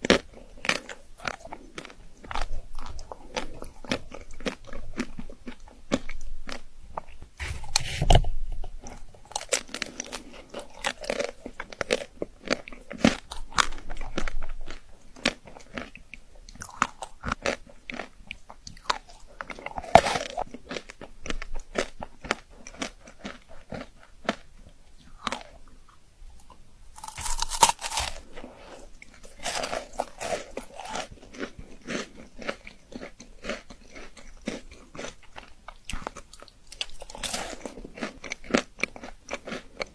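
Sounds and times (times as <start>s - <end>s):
chocolate crunching: 8.8s - 39.9s.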